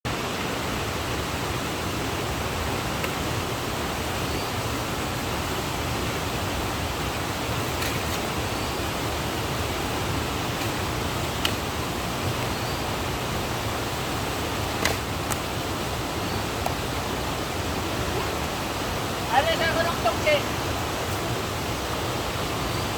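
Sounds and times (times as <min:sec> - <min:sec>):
stream water rushing: 0:00.1 - 0:22.9.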